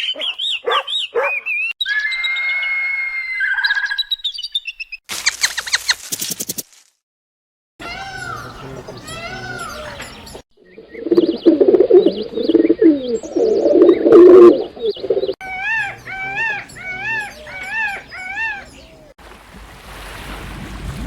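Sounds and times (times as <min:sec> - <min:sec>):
high-pitched bird call: 0:00.0 - 0:04.9, 0:07.8 - 0:19.1
pigeon cooing: 0:10.7 - 0:19.1.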